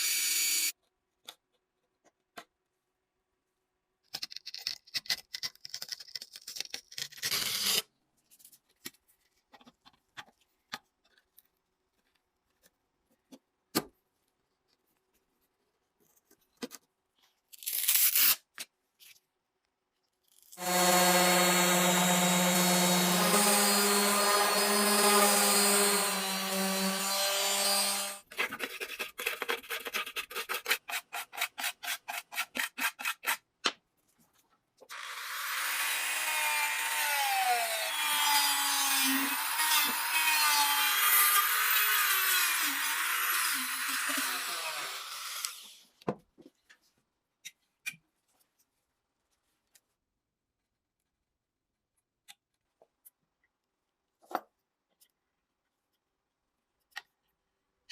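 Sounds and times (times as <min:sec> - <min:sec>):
steady pitched tool sound: 0:20.6 - 0:28.2.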